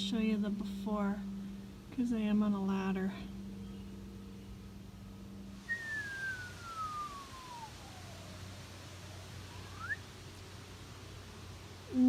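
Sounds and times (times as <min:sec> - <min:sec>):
low steady hum: 0:00.0 - 0:12.0
descending whistling tone: 0:05.6 - 0:10.2.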